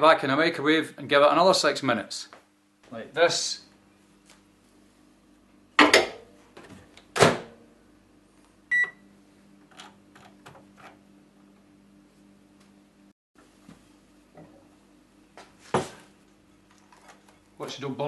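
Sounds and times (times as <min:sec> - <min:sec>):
microwave low hum: 0:00.0 - 0:18.0
microwave door banging shut: 0:07.2 - 0:07.6
short beep from control panel: 0:08.7 - 0:09.0.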